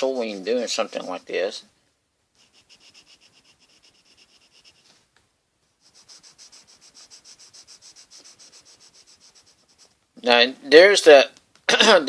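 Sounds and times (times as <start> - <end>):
pencil scratching on paper: 0.0 - 1.6, 2.4 - 5.0, 5.8 - 10.0.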